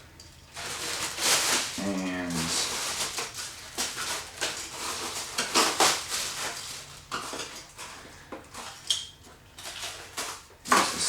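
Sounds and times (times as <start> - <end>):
packing material rustling: 0.5 - 8.8.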